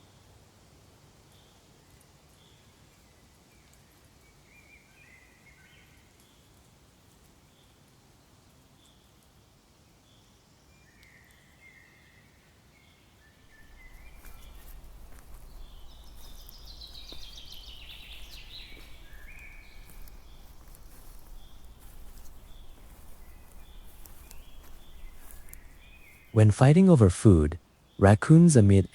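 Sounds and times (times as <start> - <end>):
rapid chattering calls: 13.6 - 26.4
high chirping animal calls: 13.6 - 26.6.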